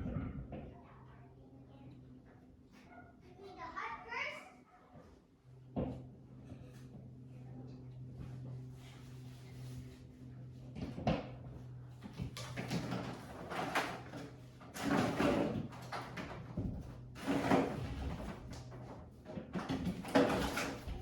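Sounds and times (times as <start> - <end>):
scraping and knocking: 12.2 - 18.9, 19.5 - 21.0.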